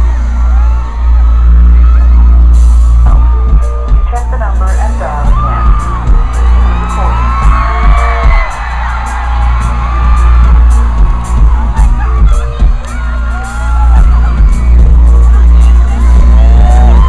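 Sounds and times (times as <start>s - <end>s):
fans screaming and whooping: 0.0s - 17.0s
pop music over loud pa: 0.0s - 17.0s.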